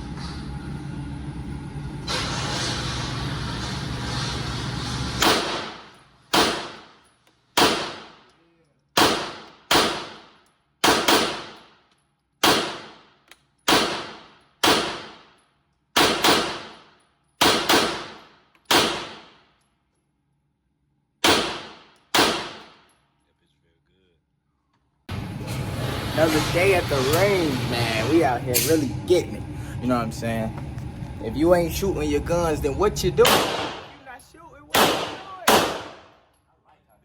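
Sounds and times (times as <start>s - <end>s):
pistol shots with echo: 5.2s - 6.9s, 7.6s - 8.2s, 9.0s - 11.6s, 12.4s - 13.0s, 13.7s - 15.2s, 16.0s - 16.8s, 17.4s - 19.3s, 21.2s - 22.7s, 33.2s - 34.0s, 34.7s - 36.2s.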